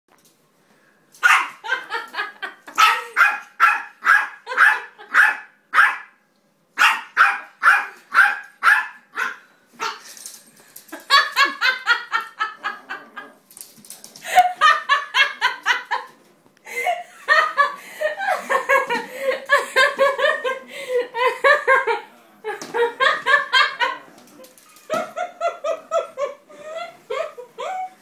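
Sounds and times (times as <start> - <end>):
dog barking: 1.2 - 1.6, 2.8 - 6.2, 6.8 - 10.0.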